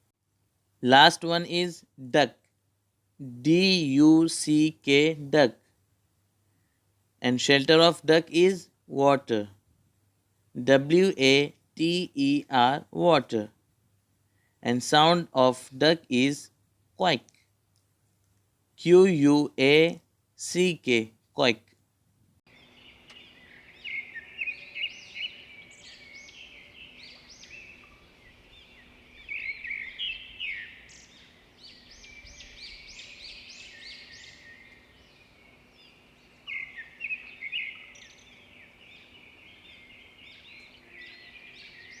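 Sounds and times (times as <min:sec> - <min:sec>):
small birds chirping: 0:22.5 - 0:42.0.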